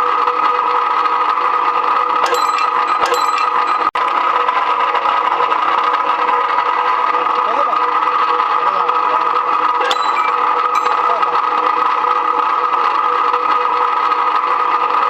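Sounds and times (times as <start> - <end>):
rebar cutting machine humming: 2.0 - 3.9, 9.8 - 11.6.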